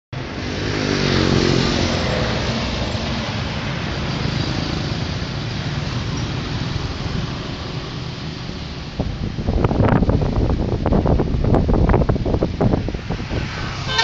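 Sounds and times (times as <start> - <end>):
traffic and road noise: 0.1 - 14.0
vehicle engine revving: 0.4 - 8.4.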